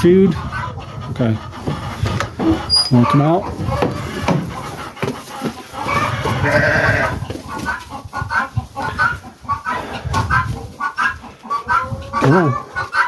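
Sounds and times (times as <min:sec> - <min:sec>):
wavering bleat: 0:06.2 - 0:07.1.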